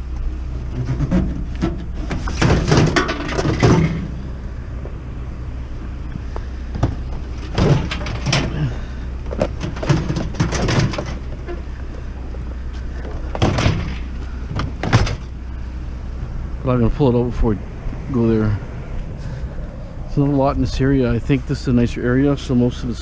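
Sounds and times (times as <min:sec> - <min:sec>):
truck engine idling: 0:00.0 - 0:23.0
clunks and rattles of microwave: 0:00.8 - 0:04.2, 0:06.8 - 0:11.7, 0:13.2 - 0:15.4.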